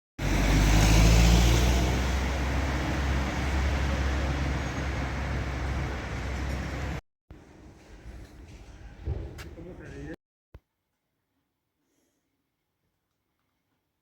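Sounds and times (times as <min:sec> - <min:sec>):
street traffic noise: 0:00.2 - 0:10.2
vehicle engine rumbling: 0:00.2 - 0:10.2.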